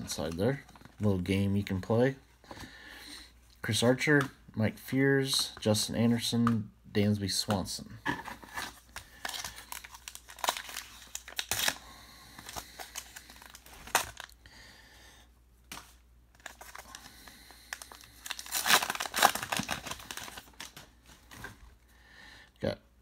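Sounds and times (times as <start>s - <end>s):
wrapper tearing and crinkling: 8.5s - 11.8s, 12.4s - 14.4s, 16.4s - 17.1s, 17.7s - 21.5s.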